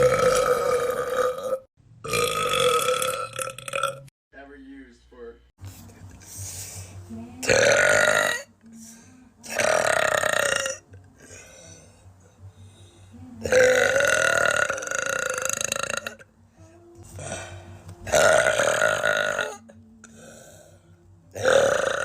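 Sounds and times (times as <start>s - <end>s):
woman burping loudly: 0.0s - 4.1s, 7.4s - 8.5s, 9.4s - 11.4s, 13.4s - 16.3s, 18.1s - 20.2s, 21.4s - 22.0s.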